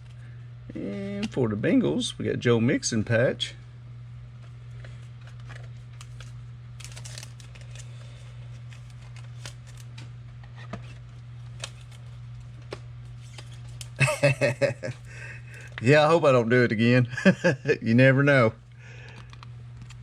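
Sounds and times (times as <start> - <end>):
steady low hum: 0.0 - 20.0
cards clicking and rustling: 4.8 - 14.4, 19.0 - 20.0.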